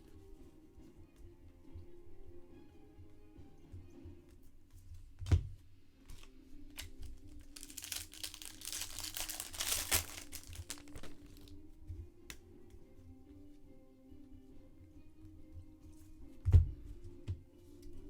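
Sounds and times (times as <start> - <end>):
foil wrapper crinkling and tearing: 6.2 - 11.5.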